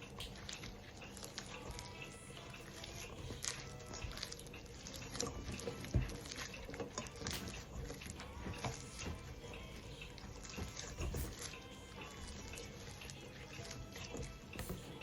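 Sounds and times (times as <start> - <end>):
dough squelching and slapping: 0.0 - 15.0.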